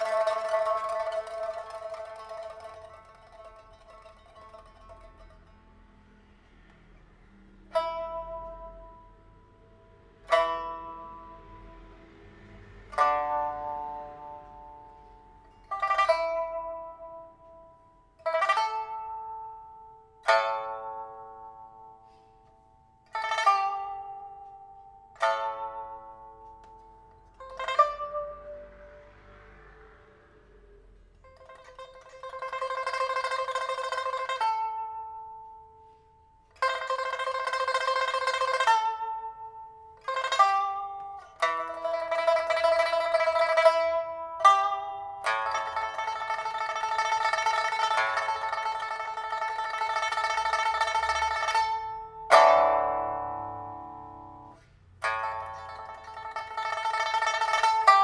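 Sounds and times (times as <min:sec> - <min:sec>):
pipa strummed chords: 0:00.0 - 0:05.6
pipa tremolo: 0:00.0 - 0:06.3, 0:07.8 - 0:35.8, 0:36.5 - 0:58.0.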